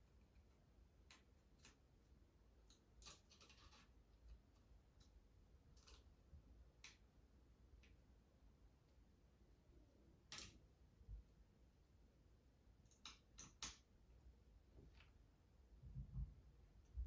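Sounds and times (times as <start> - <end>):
small metal parts clicking: 2.6 - 3.9.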